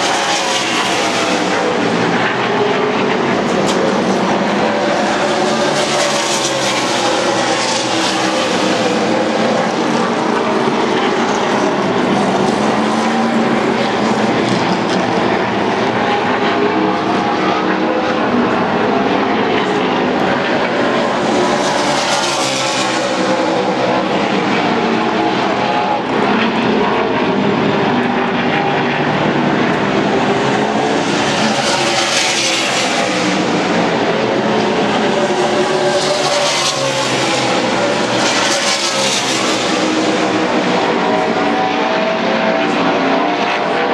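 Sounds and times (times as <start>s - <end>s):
race car engines at speed: 0.0s - 43.9s.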